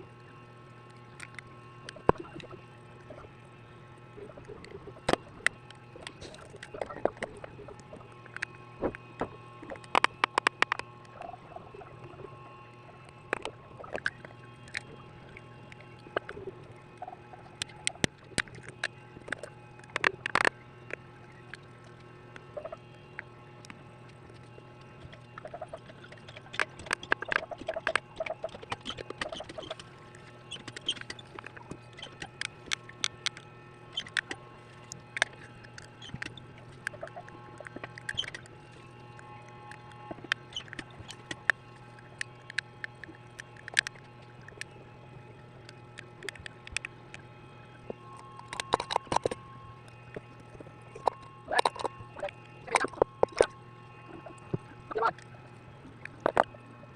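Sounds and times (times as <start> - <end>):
steady low hum: 0.0 - 56.9
small tools clicking and tapping: 26.1 - 29.9, 30.5 - 38.5, 39.6 - 44.7, 48.3 - 49.4.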